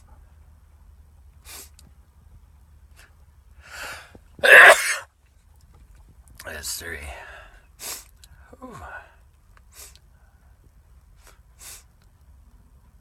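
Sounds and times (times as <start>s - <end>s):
faint in-breaths: 3.0s - 4.2s, 7.1s - 10.6s
man sneezing: 4.4s - 5.0s.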